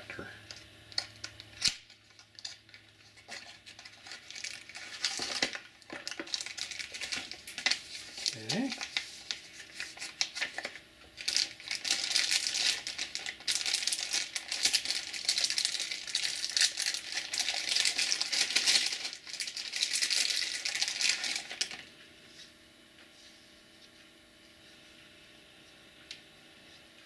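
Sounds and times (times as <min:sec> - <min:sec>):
packaging crinkling: 0:01.0 - 0:21.9.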